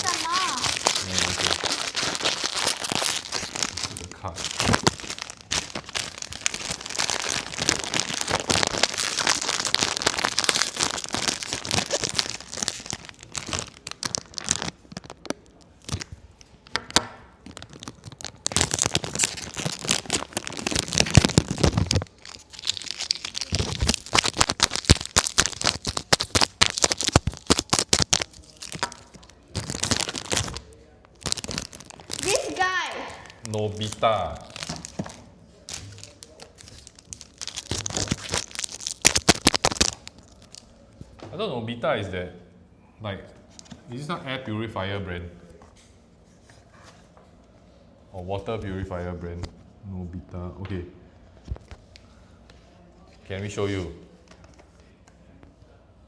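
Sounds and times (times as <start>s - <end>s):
plastic wrapper crinkling and tearing: 0.0s - 41.2s.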